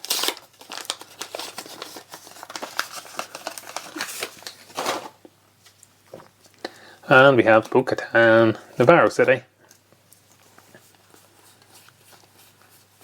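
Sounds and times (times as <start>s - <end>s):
trading cards rustling: 0.0s - 5.2s.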